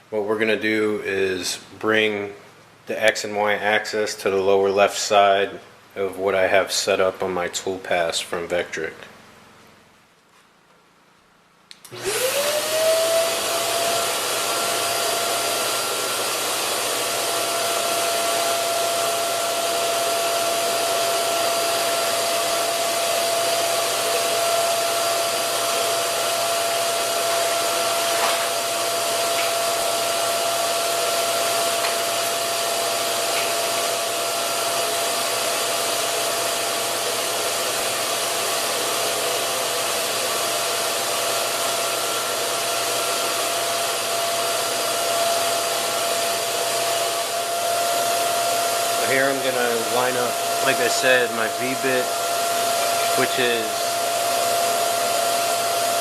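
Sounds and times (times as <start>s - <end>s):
vacuum motor whirring and whining: 11.8s - 56.0s.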